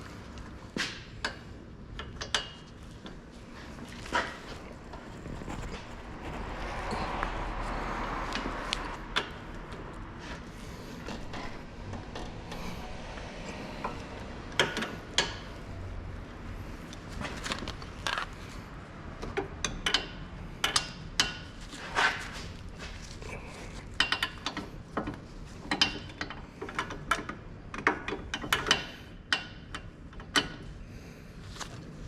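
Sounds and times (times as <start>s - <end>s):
rushing noise: 4.7s - 14.5s.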